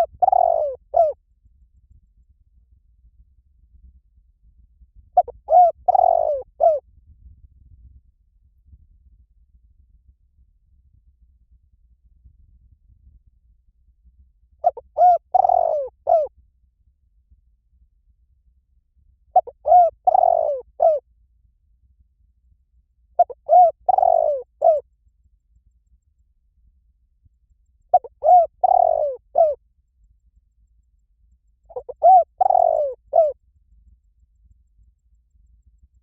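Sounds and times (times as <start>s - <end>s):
dove cooing: 0.0s - 1.2s, 5.2s - 6.8s, 14.6s - 16.3s, 19.4s - 21.0s, 23.2s - 24.8s, 27.9s - 29.6s, 31.7s - 33.4s.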